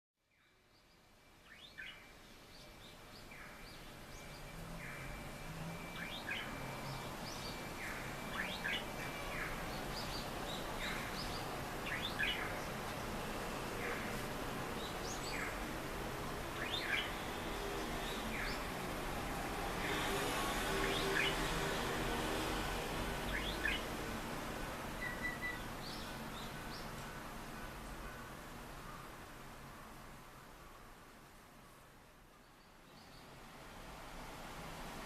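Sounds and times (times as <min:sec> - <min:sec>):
budgerigar chirping: 0:25.0 - 0:25.6.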